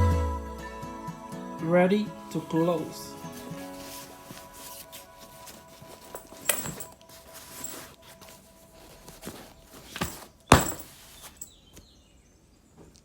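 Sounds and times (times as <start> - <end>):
backpack fabric rustling: 2.3 - 11.8.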